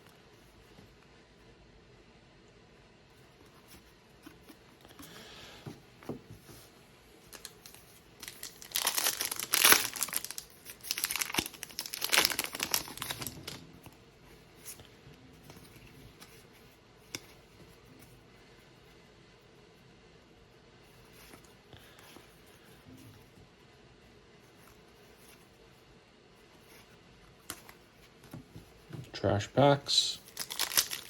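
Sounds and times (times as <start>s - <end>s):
foil wrapper tearing and crinkling: 7.3s - 13.6s, 30.3s - 31.0s.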